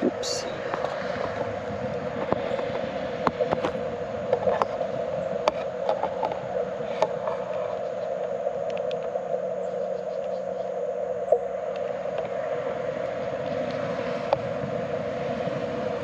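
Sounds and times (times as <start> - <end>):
radio receiver hiss: 3.2 - 12.6.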